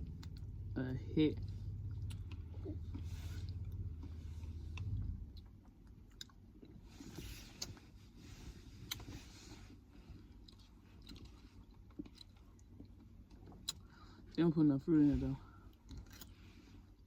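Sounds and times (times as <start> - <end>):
low steady hum: 0.0 - 17.0
person chewing crunchy food: 1.8 - 7.8, 8.7 - 14.3, 15.7 - 17.0.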